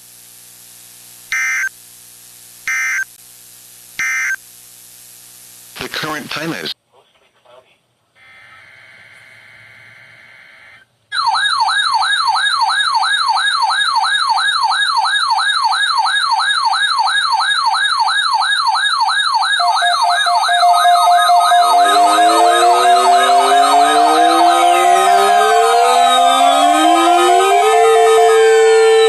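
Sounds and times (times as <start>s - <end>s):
faint radio hiss: 4.6s - 8.2s
warbling electronic siren alarm: 11.1s - 29.0s
rising and falling sirens: 11.2s - 29.0s
steady alert tones: 19.6s - 29.0s.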